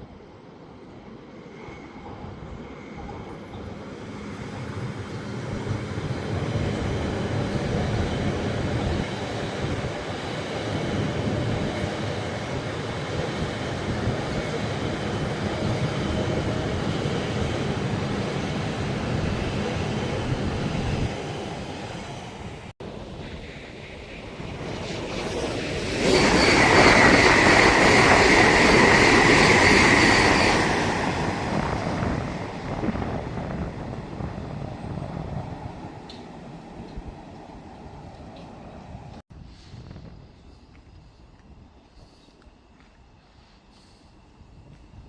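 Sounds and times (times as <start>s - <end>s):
train passing with rushing noise: 0.0s - 45.0s
high-pitched squeal: 23.2s - 32.0s.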